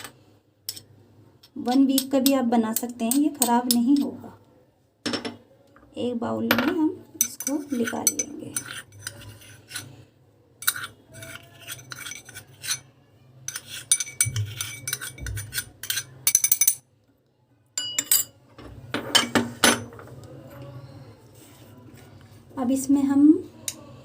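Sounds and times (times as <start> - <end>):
spoon scraping and clinking bowl: 0.7 - 0.9, 7.2 - 10.0, 10.6 - 12.9, 13.5 - 16.8.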